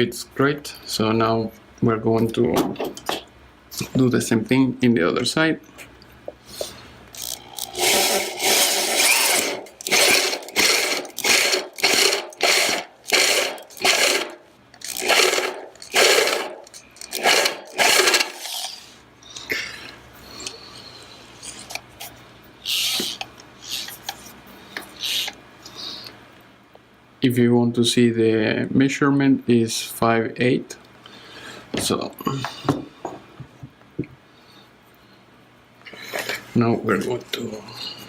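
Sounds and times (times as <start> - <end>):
power drill boring: 7.2 - 18.8, 22.7 - 23.8.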